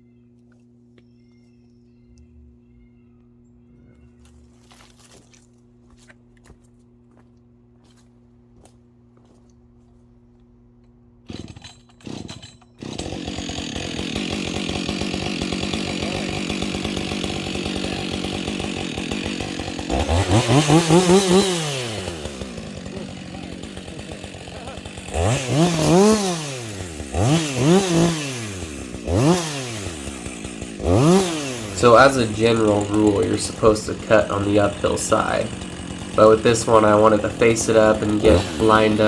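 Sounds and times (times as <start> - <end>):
chainsaw starter cord pulls: 11.2 - 39.0
chainsaw running and revving: 11.3 - 39.0.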